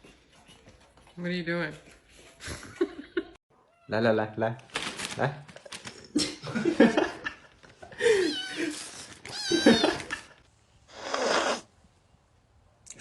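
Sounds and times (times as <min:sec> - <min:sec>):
cat yowling: 0:09.3 - 0:10.1.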